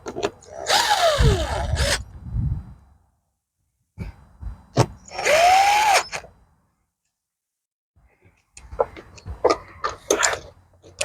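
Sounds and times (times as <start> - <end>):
cordless drill driving screws: 0.5 - 2.0, 5.1 - 6.3.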